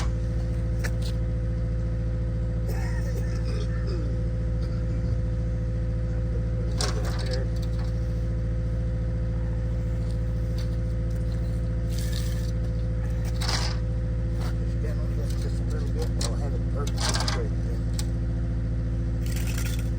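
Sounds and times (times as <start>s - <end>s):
diesel engine running steadily: 0.0s - 19.9s
short metallic rattle: 6.7s - 8.3s, 10.0s - 14.6s, 15.2s - 18.1s, 19.2s - 19.9s.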